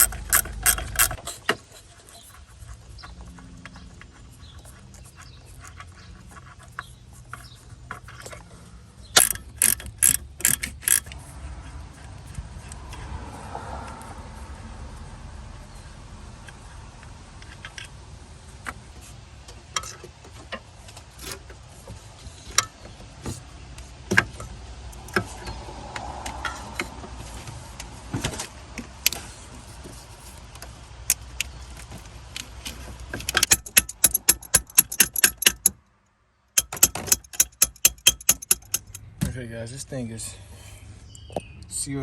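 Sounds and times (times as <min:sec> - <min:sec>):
metal tools clinking on metal: 0:00.0 - 0:01.4, 0:09.0 - 0:11.2, 0:33.2 - 0:35.8, 0:36.6 - 0:39.0.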